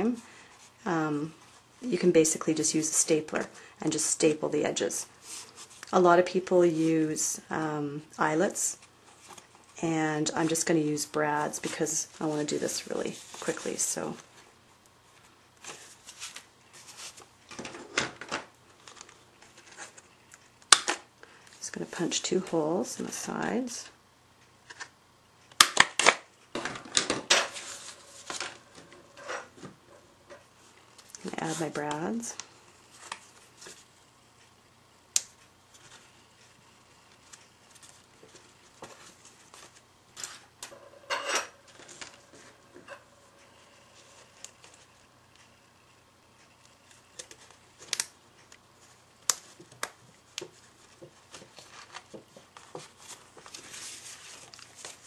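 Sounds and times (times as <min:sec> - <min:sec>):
card rustling: 0:26.6 - 0:29.8.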